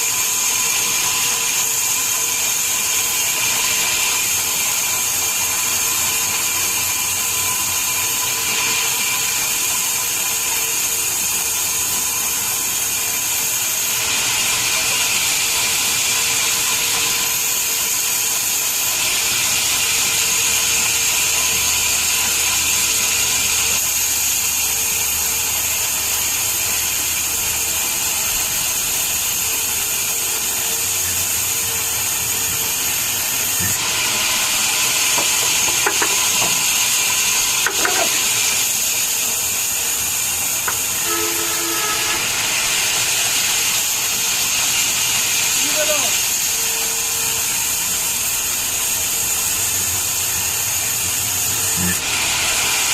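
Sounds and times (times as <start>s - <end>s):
saw cutting wood: 0.0s - 52.9s
faint machine whine: 20.8s - 50.4s.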